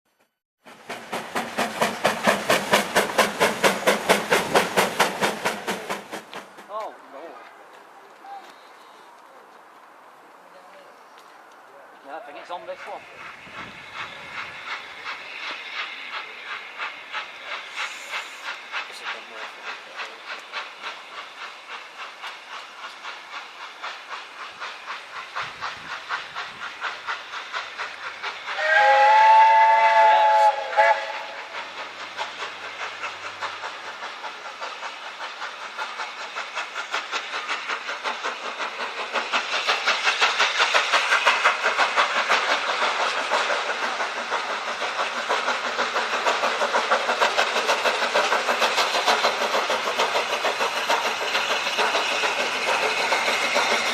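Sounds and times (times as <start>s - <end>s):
steam locomotive exhaust chuffing: 0.2s - 10.3s, 11.2s - 53.9s
steam locomotive chime whistle: 28.5s - 31.6s.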